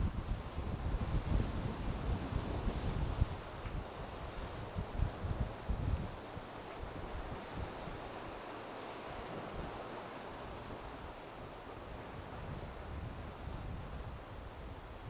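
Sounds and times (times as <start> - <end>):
wind rumbling on microphone: 0.0 - 8.1, 11.8 - 15.0.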